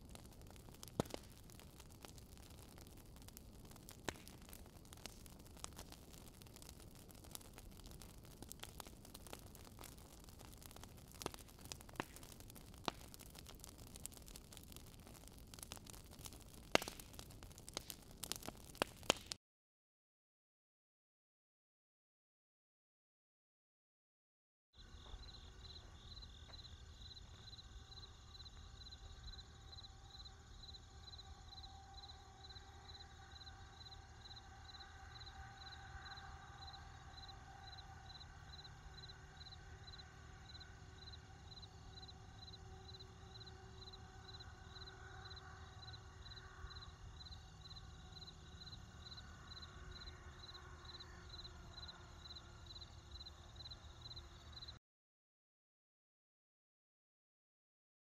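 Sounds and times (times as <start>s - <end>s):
faint insect tones: 0.0s - 18.9s, 24.8s - 54.8s
crickets chirping: 24.8s - 54.8s.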